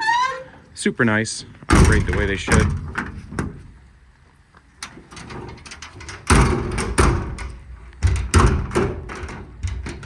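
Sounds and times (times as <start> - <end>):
metal drawers and door banging shut: 1.7 - 3.6, 5.1 - 10.0.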